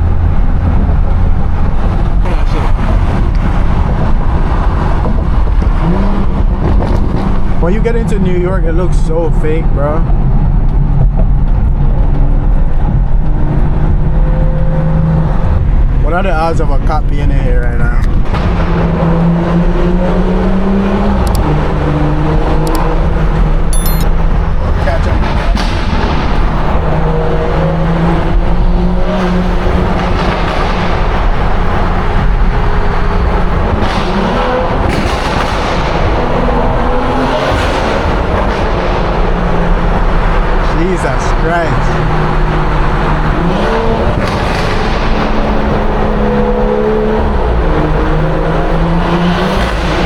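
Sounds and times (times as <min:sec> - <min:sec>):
car engine droning: 0:00.0 - 0:50.0
road and tunnel rumble: 0:00.0 - 0:50.0.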